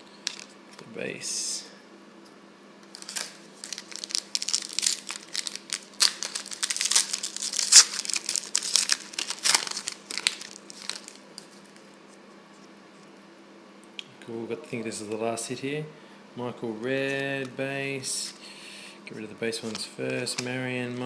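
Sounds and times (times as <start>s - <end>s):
wrapper crinkling: 0.2s - 0.6s, 2.8s - 11.9s.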